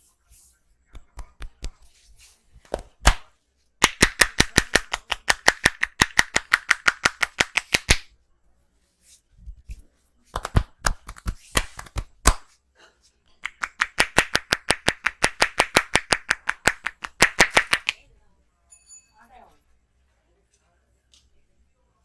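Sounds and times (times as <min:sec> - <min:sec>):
hands slapping in percussive massage: 0:00.9 - 0:02.0, 0:02.6 - 0:08.1, 0:10.4 - 0:12.6, 0:13.4 - 0:18.0.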